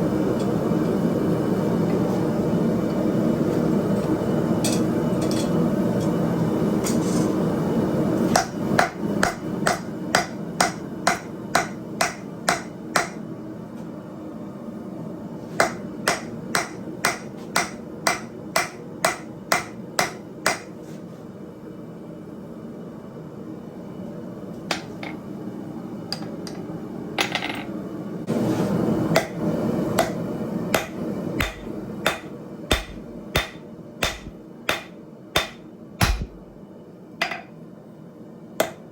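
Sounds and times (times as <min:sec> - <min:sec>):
hammer striking hot steel on anvil: 0:08.3 - 0:13.2, 0:15.6 - 0:20.7, 0:29.1 - 0:29.4, 0:30.0 - 0:36.5, 0:38.6 - 0:38.9.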